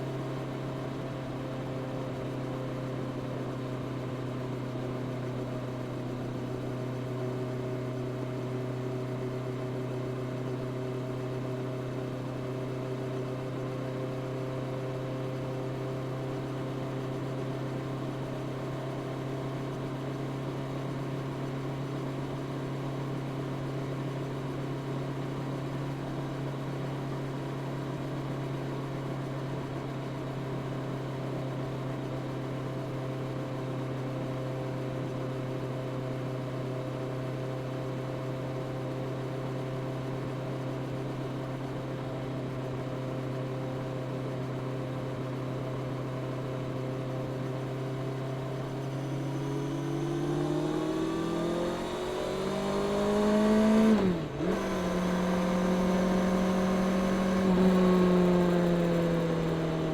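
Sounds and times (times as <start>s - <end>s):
motorcycle engine cruising: 49.1s - 59.9s.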